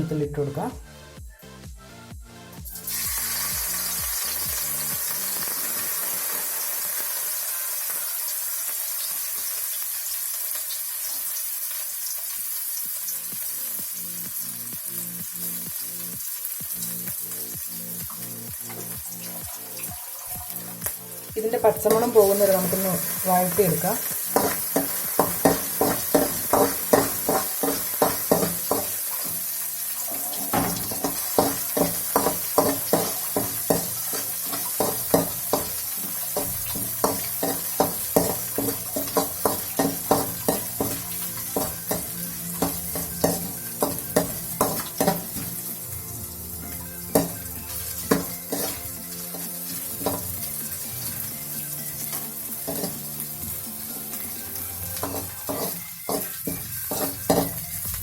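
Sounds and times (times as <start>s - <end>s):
ginger and garlic sizzling in oil: 2.7s - 58.0s
utensil scraping and knocking pan: 48.1s - 49.4s, 52.1s - 53.0s, 55.0s - 57.6s.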